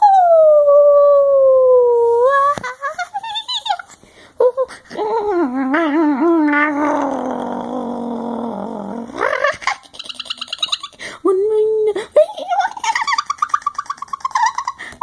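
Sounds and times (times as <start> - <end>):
person howling and squealing: 4.9 - 9.7.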